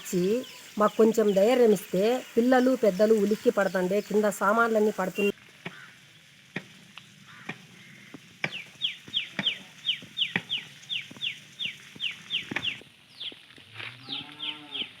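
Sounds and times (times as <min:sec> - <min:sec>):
bird chirping rapidly: 0:00.0 - 0:05.3, 0:08.4 - 0:13.4
cow mooing: 0:13.9 - 0:15.0.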